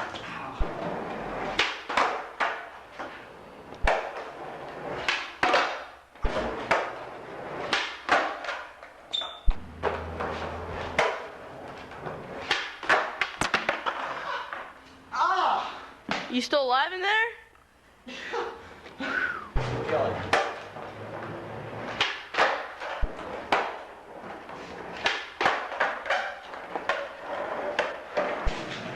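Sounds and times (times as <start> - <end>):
skateboards clacking on floor: 0.0 - 9.1, 9.7 - 14.8, 19.6 - 28.9
skateboard heavy thuds: 3.8 - 8.8, 9.5 - 14.1, 19.5 - 28.9.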